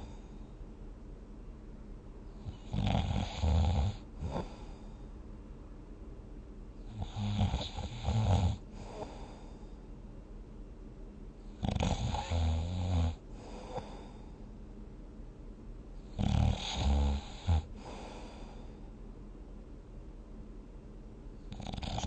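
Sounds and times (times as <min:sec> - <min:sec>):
person snoring deeply: 0:16.2 - 0:18.4.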